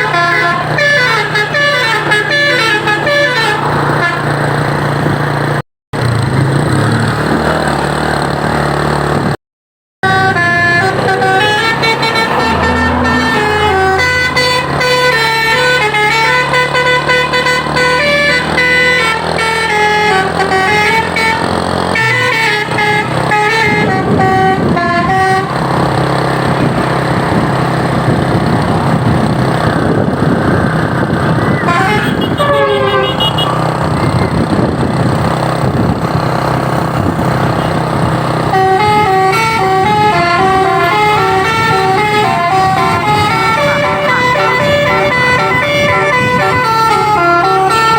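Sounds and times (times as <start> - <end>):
musical air horn melody: 0.0 - 4.4, 10.0 - 25.6, 31.6 - 33.6, 38.5 - 47.9
truck engine running: 0.0 - 9.4, 10.0 - 47.9.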